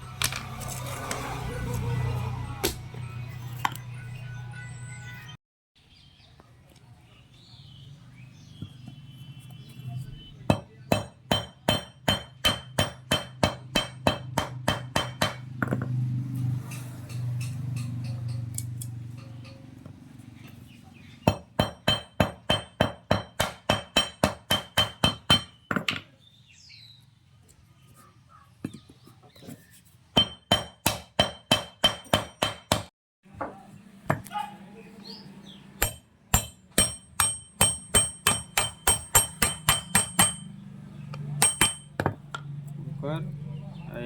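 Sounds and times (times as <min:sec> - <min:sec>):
hammer ringing on steel: 0:10.5 - 0:15.4, 0:35.8 - 0:42.2.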